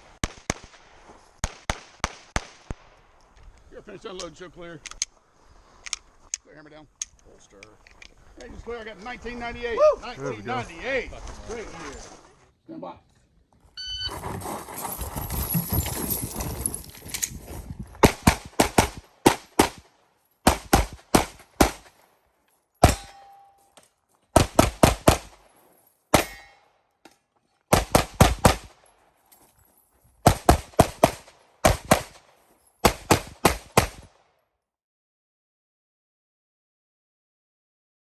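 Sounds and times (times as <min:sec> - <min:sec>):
pistol shots: 0:18.0 - 0:21.9, 0:22.8 - 0:23.3, 0:24.4 - 0:25.4, 0:27.7 - 0:28.8, 0:30.2 - 0:34.1
steel target ringing: 0:22.8 - 0:23.7, 0:26.2 - 0:26.7.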